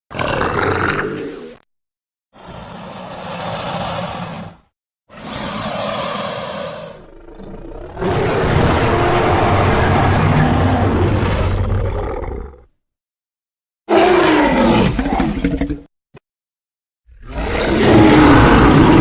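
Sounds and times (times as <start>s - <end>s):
crocodile roar: 0.1s - 1.5s, 2.4s - 12.7s, 17.1s - 19.0s.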